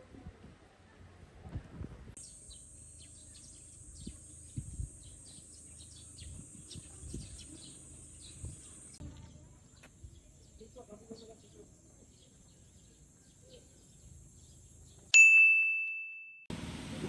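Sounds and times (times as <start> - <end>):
birds chirping: 2.2 - 15.1.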